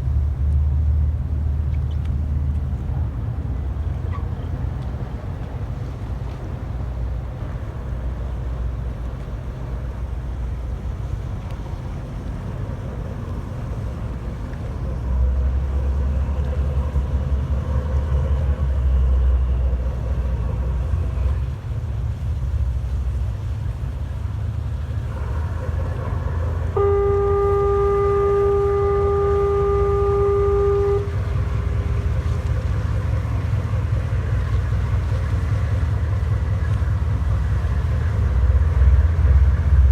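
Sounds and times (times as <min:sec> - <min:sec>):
boat engines rumbling: 0:00.0 - 0:39.9
boat horn blast: 0:25.1 - 0:33.6.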